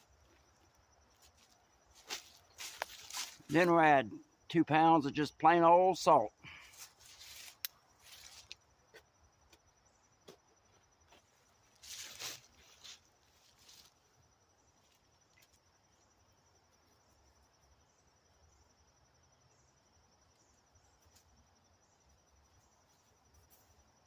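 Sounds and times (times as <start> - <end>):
soft rustles: 1.1 - 3.5, 6.7 - 8.6, 11.8 - 14.0.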